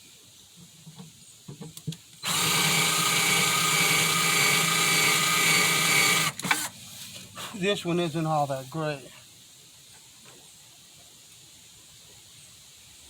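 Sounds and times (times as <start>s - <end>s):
power drill running: 2.2s - 6.7s.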